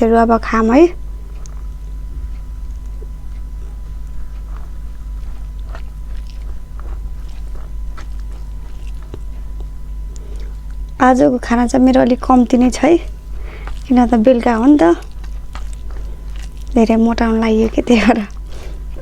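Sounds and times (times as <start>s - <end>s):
steady low hum: 0.0s - 19.0s
person chewing food: 1.0s - 11.0s, 12.0s - 19.0s.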